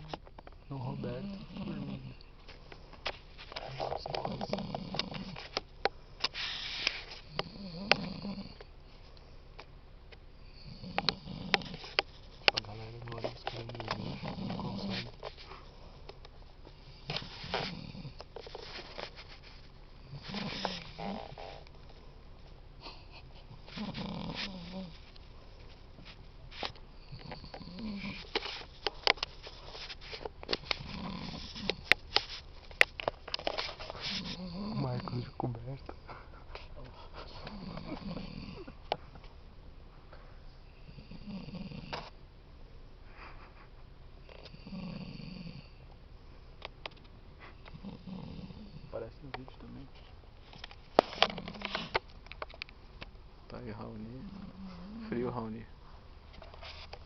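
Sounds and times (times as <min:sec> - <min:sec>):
man snoring: 0:00.9 - 0:02.2, 0:03.6 - 0:05.5, 0:07.3 - 0:08.6, 0:10.5 - 0:12.0, 0:12.6 - 0:15.2, 0:16.9 - 0:18.2, 0:20.0 - 0:21.6, 0:23.6 - 0:25.0, 0:27.0 - 0:28.4, 0:30.6 - 0:31.9, 0:34.0 - 0:35.5, 0:37.4 - 0:38.8, 0:40.8 - 0:42.1, 0:44.5 - 0:45.8, 0:47.7 - 0:49.0, 0:54.1 - 0:55.2.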